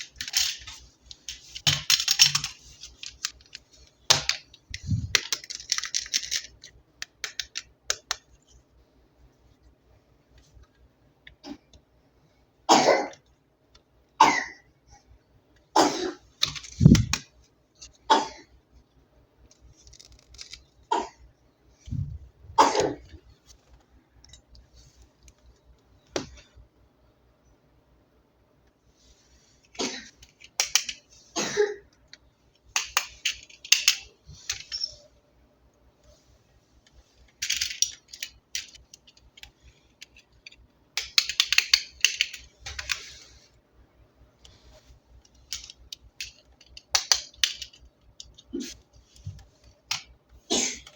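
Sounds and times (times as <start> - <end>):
plastic toy parts clicking: 0.0 - 8.4, 16.4 - 17.9, 19.5 - 20.8, 30.2 - 31.1, 32.1 - 35.0, 37.2 - 43.2, 45.2 - 48.5.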